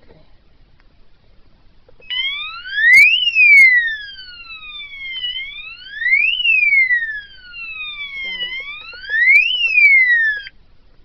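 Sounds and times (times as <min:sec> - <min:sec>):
alarm siren wailing: 0:02.0 - 0:10.5.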